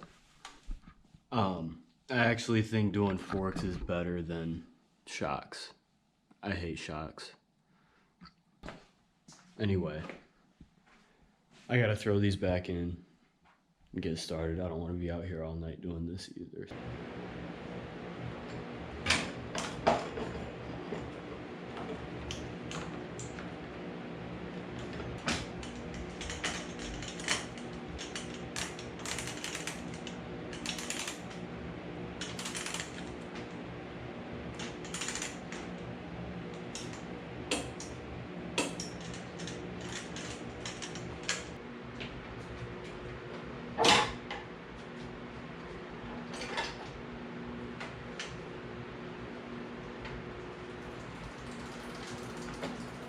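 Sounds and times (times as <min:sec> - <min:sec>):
steady background hum: 0:13.9 - 0:53.0.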